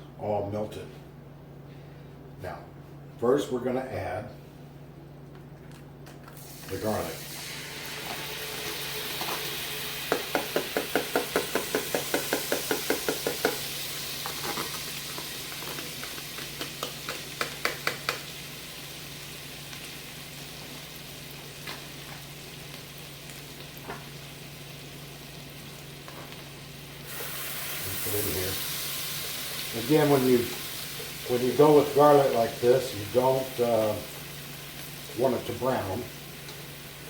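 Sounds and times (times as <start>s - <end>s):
butter sizzling in a pot: 6.4s - 37.0s
utensil tapping against pot: 10.1s - 13.6s, 16.6s - 18.3s.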